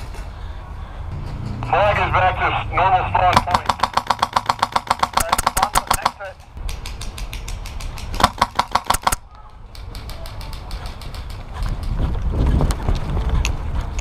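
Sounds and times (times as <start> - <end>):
airsoft rifle full-auto bursts: 8.2 - 9.2.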